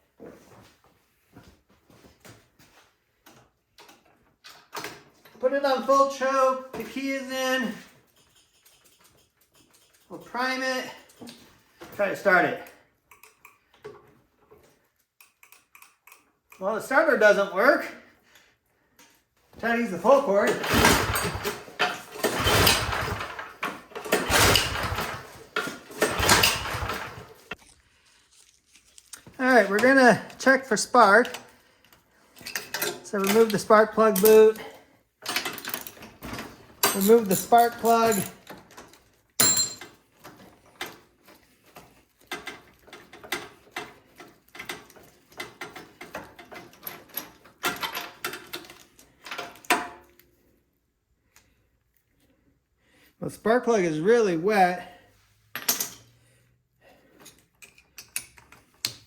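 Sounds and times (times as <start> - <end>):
wrench and socket clicking: 15.2 - 16.6
engine cranking without catching: 19.8 - 27.8, 28.4 - 34.7, 35.3 - 39.8
starter cord pulled: 20.4 - 27.6.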